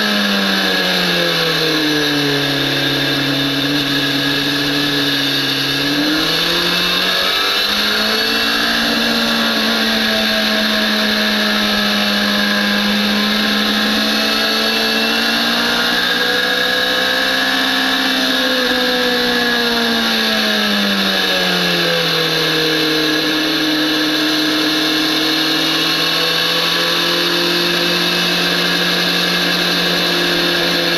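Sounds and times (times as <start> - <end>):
motorcycle engine revving: 0.0 - 30.9.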